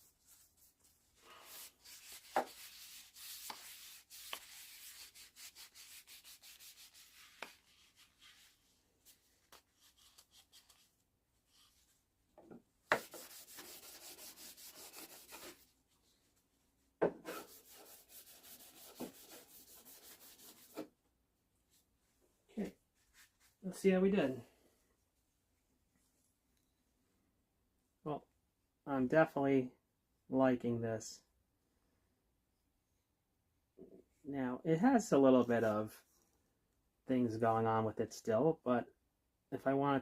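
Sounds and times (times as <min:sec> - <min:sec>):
scratchy wooden handle strokes: 0:00.0 - 0:08.6, 0:12.9 - 0:15.6, 0:17.3 - 0:20.9.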